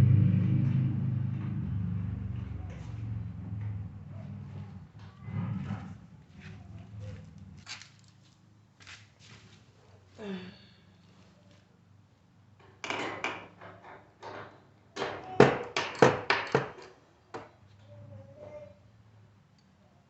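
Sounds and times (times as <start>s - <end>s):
metal knocks and clatters: 0.7s - 8.1s, 12.6s - 17.0s.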